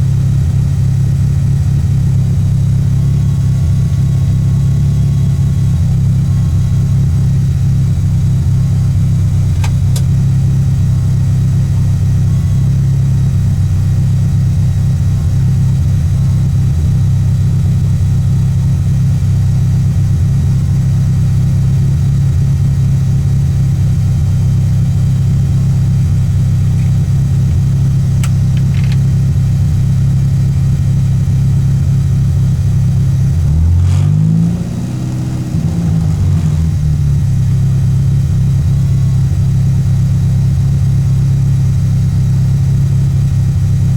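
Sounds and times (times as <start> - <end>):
car engine revving: 2.7 - 19.2, 24.7 - 31.1, 31.7 - 39.2.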